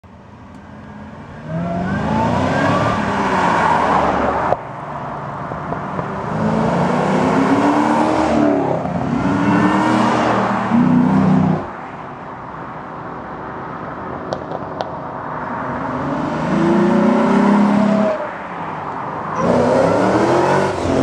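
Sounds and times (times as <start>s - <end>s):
car engine accelerating: 0.5s - 4.5s, 19.3s - 21.0s.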